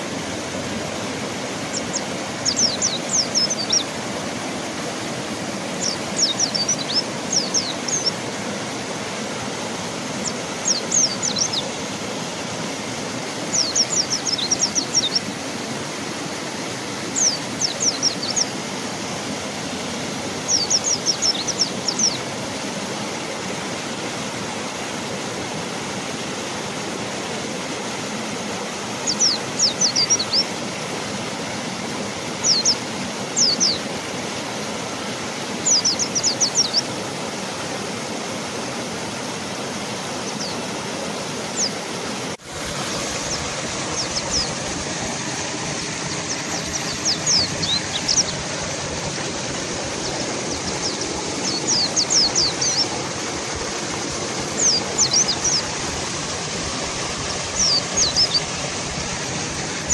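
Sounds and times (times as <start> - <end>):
river rushing: 0.0 - 59.9
bird chirping: 1.7 - 3.9, 5.8 - 8.2, 10.2 - 11.7, 13.5 - 15.2, 17.2 - 18.5, 20.5 - 22.2, 32.4 - 32.8, 40.2 - 40.6, 43.2 - 44.8, 45.9 - 48.5, 49.9 - 53.0, 54.6 - 55.7, 57.5 - 58.5.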